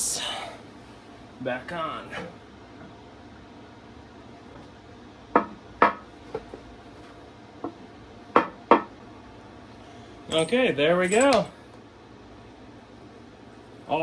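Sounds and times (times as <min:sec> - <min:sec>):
metal parts clanking: 0:10.3 - 0:11.5.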